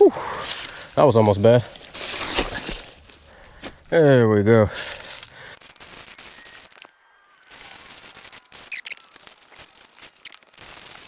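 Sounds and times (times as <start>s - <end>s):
scratchy hiss: 5.0s - 11.0s.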